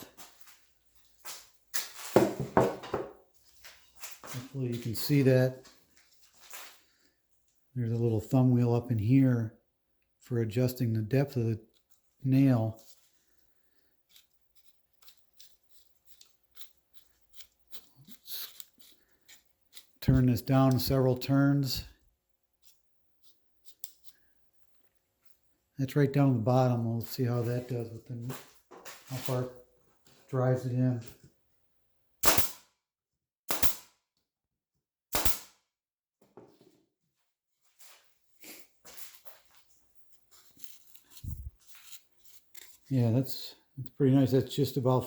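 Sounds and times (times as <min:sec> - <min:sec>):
pneumatic nailer firing into wood: 0:32.2 - 0:32.7, 0:33.5 - 0:34.0, 0:35.1 - 0:35.6.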